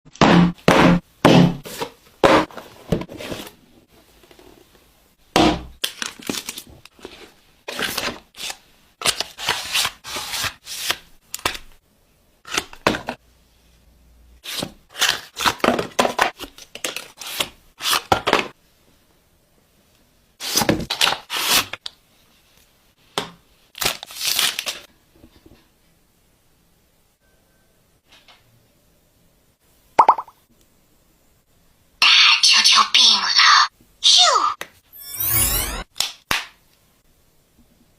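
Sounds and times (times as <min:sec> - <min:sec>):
packaging tearing and crinkling: 0:05.8 - 0:06.7, 0:23.8 - 0:24.8.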